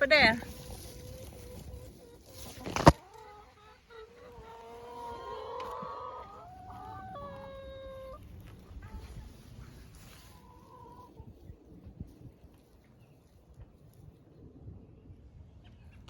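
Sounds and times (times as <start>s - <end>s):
chickens calling: 0.0s - 12.0s.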